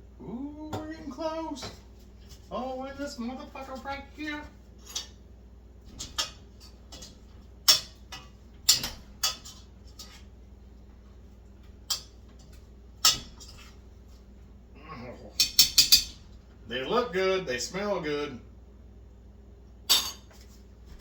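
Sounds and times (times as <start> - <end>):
metal utensil clanking on cookware: 4.8 - 5.2, 5.9 - 10.2, 11.9 - 13.7, 15.4 - 16.2, 19.9 - 20.4.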